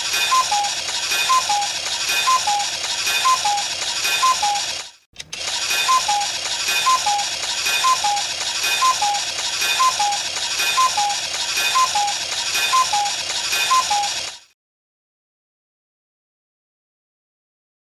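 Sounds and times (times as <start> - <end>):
cuckoo clock call: 0.0 - 4.8, 5.6 - 14.3
clock mechanism rattling: 0.0 - 14.5.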